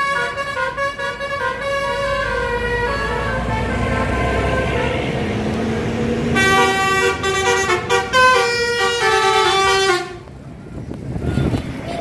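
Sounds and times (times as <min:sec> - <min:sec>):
multi-tone musical bus horn: 0:00.0 - 0:05.3, 0:06.3 - 0:10.3
vehicle rumble: 0:00.0 - 0:12.0.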